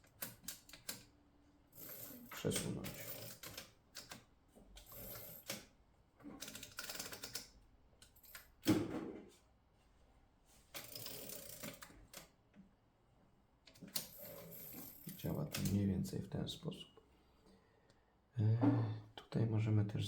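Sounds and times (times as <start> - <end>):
typewriter carriage return clatter: 1.8 - 4.2, 6.4 - 7.5.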